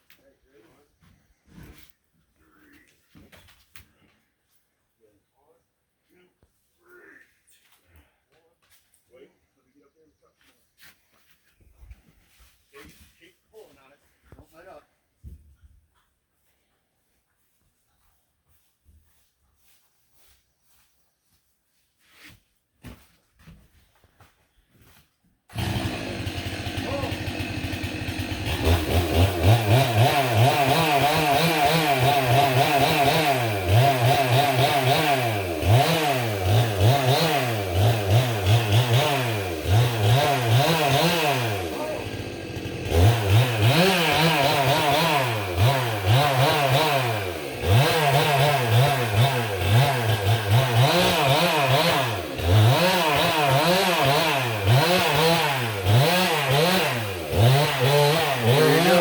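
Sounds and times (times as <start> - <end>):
chainsaw cutting wood: 25.5 - 59.0.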